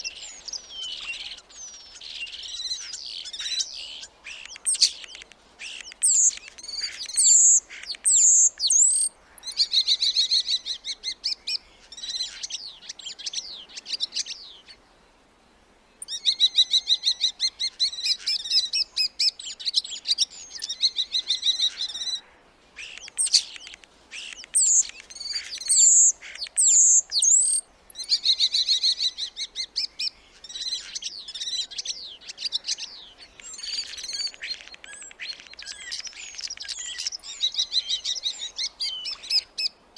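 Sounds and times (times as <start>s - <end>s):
starling singing: 4.3s - 11.4s, 22.8s - 39.4s.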